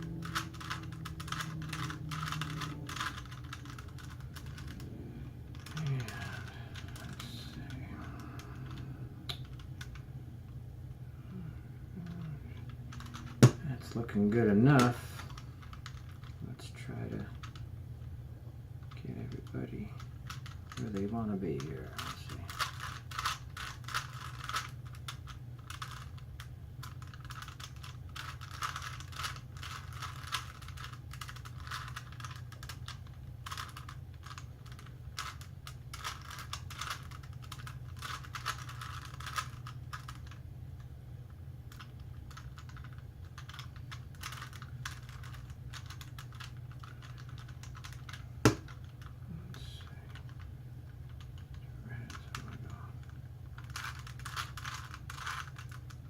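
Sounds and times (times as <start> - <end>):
plastic cube clicking: 0.0 - 4.8, 26.8 - 40.4
steady low hum: 0.0 - 56.0.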